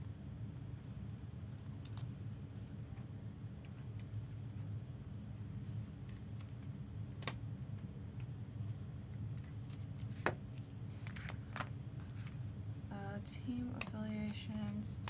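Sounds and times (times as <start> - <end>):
steady low hum: 0.0 - 15.0
cards sliding and rustling: 9.4 - 12.5.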